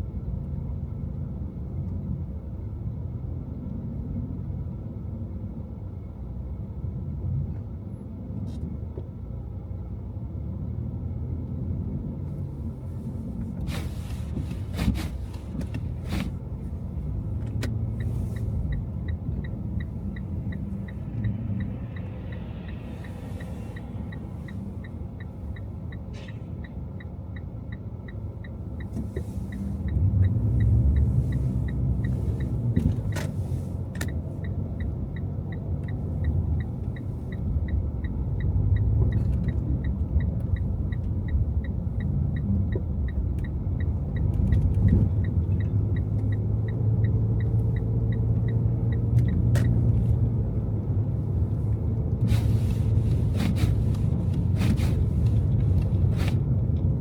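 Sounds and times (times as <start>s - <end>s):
car engine and tyre rumble: 0.0s - 57.0s
light regular ticking: 16.5s - 33.2s, 33.8s - 52.3s.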